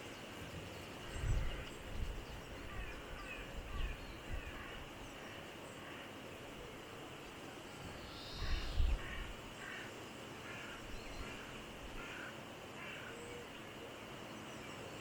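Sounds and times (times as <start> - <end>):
ducks calling softly: 8.1 - 13.3.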